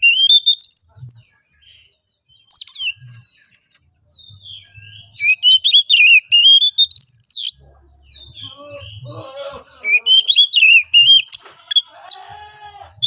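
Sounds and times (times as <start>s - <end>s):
bird singing whistled notes: 0.0s - 11.9s.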